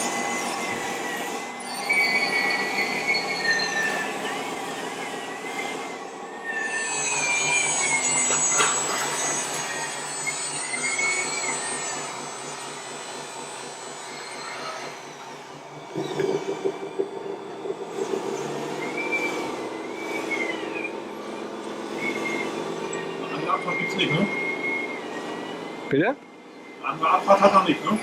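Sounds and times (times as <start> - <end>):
electric motor whine: 6.9 - 25.9
steady hum: 15.1 - 26.4.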